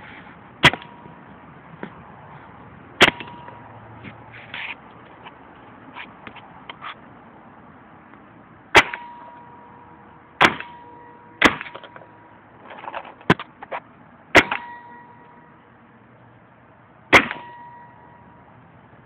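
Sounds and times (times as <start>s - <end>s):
paintball gun shots: 10.4s - 10.8s, 11.4s - 11.8s, 17.1s - 17.6s.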